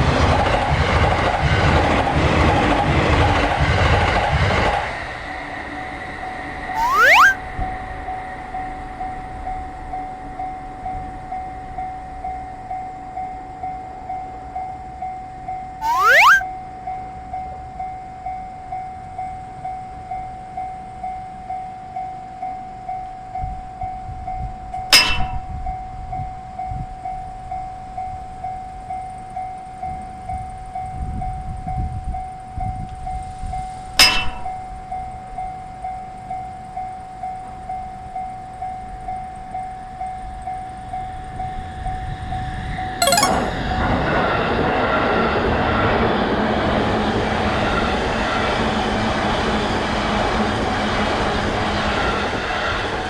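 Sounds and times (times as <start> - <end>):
short sharp loud sounds: 6.8 - 7.4, 15.8 - 16.4.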